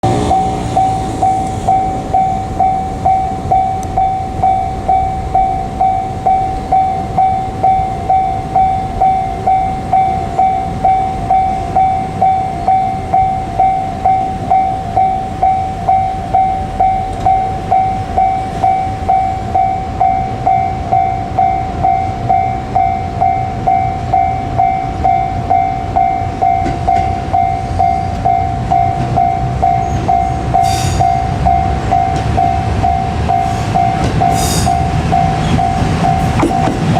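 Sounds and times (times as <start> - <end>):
low rumble: 0.0 - 26.6
level crossing warning bell: 0.0 - 36.9.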